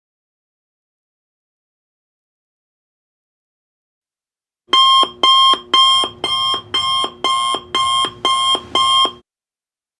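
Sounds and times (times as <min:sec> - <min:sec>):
alarm clock beeping: 0:04.7 - 0:09.2.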